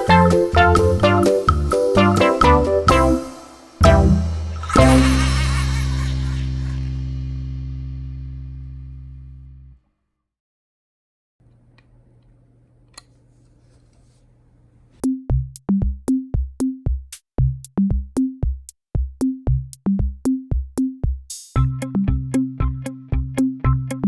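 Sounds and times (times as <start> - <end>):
drum machine beat: 0.0 - 7.3, 15.0 - 24.0
faint low hum: 3.9 - 9.8.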